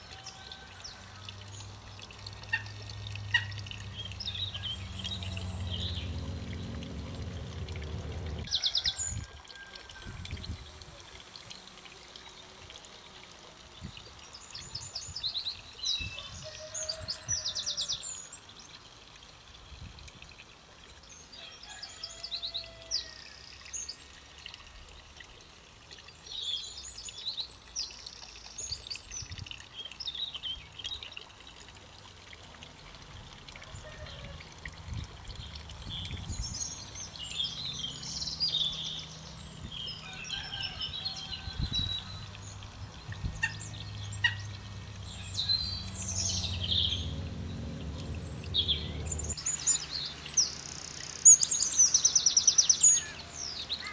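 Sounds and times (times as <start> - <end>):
songbirds trilling: 0.0 - 9.2, 35.4 - 53.9
low rumble: 4.2 - 8.5, 43.1 - 49.5.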